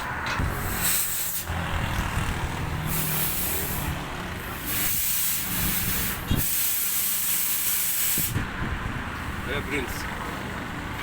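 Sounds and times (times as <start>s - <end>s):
loud hissing bursts: 0.6s - 1.5s, 2.8s - 8.4s.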